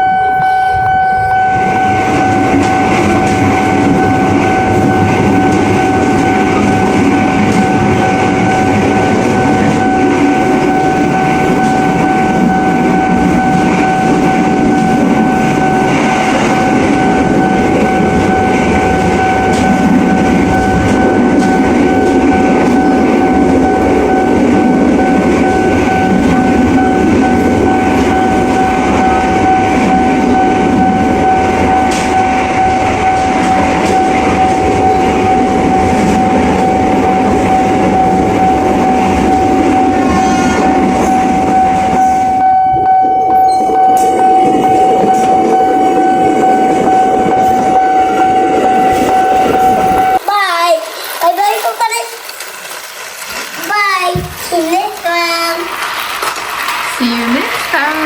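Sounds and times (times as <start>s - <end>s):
toy train motor whine: 48.8s - 58.0s
wheels rattling on plastic track: 50.2s - 58.0s.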